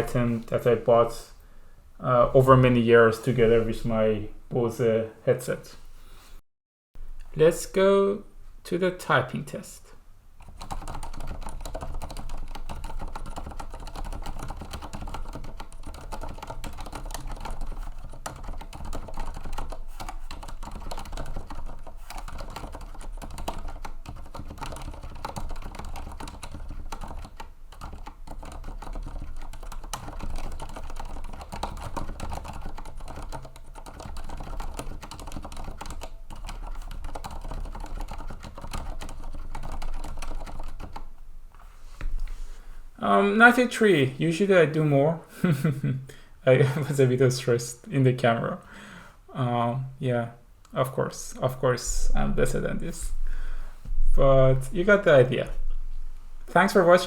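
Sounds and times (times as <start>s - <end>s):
fast keyboard typing: 10.4s - 41.1s.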